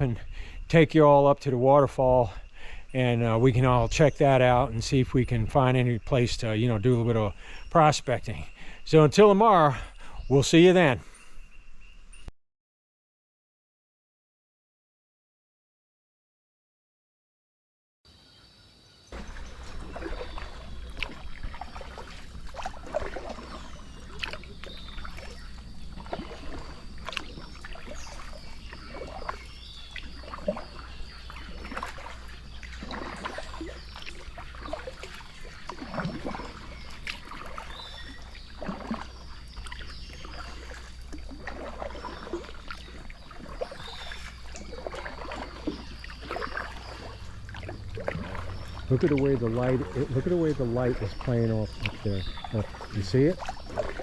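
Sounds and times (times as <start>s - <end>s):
paddle splashes: 19.1s - 54.0s.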